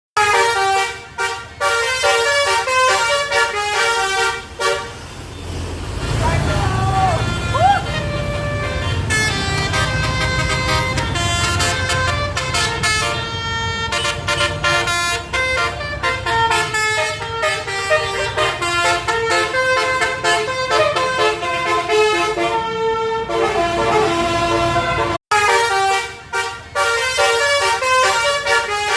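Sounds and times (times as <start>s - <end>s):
multi-tone bus horn tune: 0.2s - 28.9s
low engine rumble: 3.2s - 25.2s.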